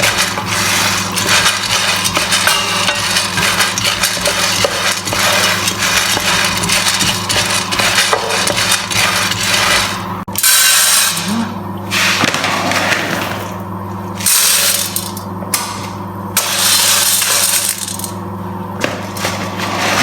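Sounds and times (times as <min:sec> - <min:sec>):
coffee beans rattling in a pan: 0:00.0 - 0:10.0, 0:16.4 - 0:18.2
steady low hum: 0:00.0 - 0:20.0.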